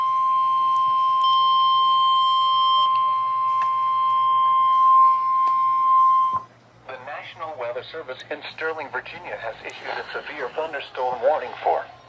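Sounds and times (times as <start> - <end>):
steady warning alarm tone: 0.0 - 6.5
radio static clicks: 9.1 - 11.7.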